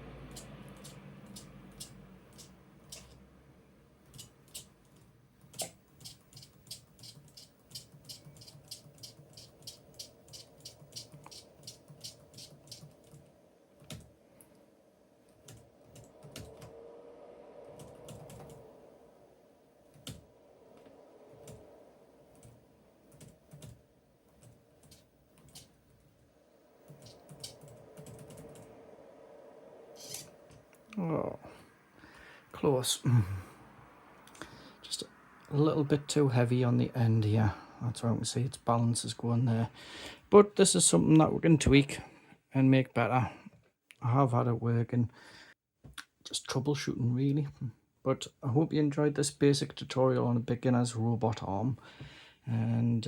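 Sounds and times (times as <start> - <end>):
keyboard keystrokes: 4.1 - 13.2, 26.9 - 28.6.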